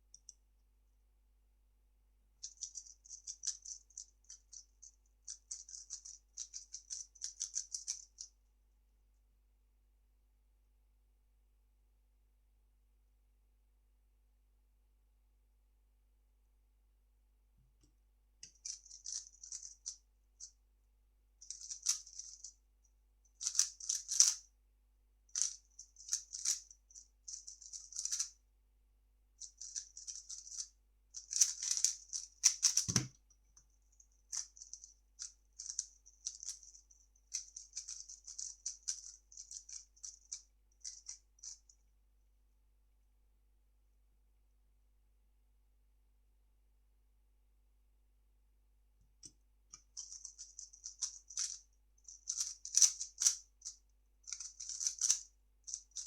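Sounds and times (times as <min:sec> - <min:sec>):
puzzle cube clicky layer turns: 0:31.2 - 0:33.2, 0:50.0 - 0:53.4, 0:54.3 - 0:56.0.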